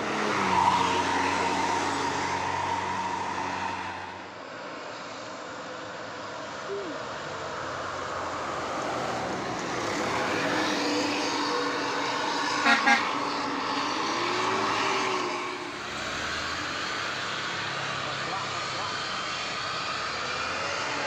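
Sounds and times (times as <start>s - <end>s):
tyres hissing on wet road: 0.0s - 5.4s, 6.4s - 21.0s
bus engine: 0.0s - 21.0s
bus horn toots: 12.6s - 13.2s.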